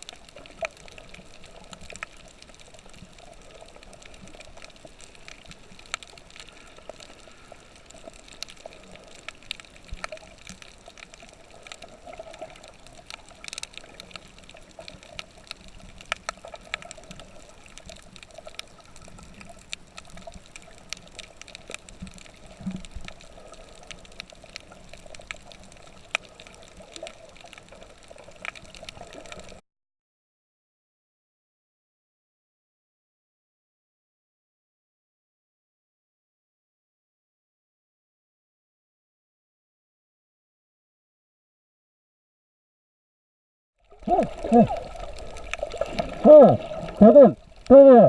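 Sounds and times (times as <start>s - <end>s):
water hiss with crackles: 0.0s - 29.6s, 43.8s - 48.0s.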